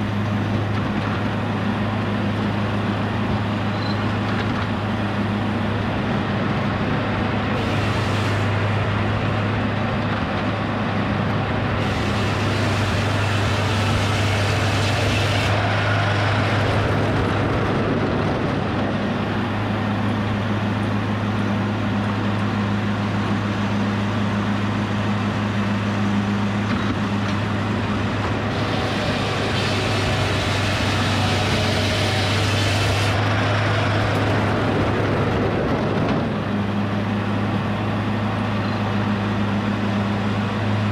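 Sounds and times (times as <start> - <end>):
sawmill power unit humming: 0.0 - 40.9
circular saw blade cutting wood: 7.6 - 8.6, 11.8 - 15.7, 28.4 - 33.2.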